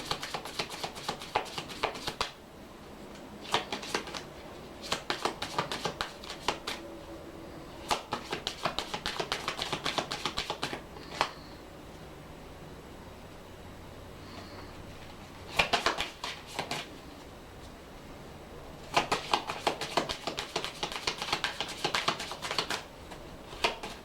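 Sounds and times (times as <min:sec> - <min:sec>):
cards being shuffled: 0:00.0 - 0:02.4, 0:03.4 - 0:06.8, 0:07.8 - 0:11.4, 0:15.5 - 0:16.9, 0:18.9 - 0:24.0.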